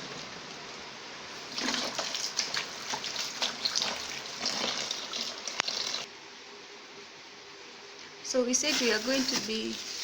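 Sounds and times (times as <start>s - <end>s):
water splashing in a container: 1.4s - 6.1s.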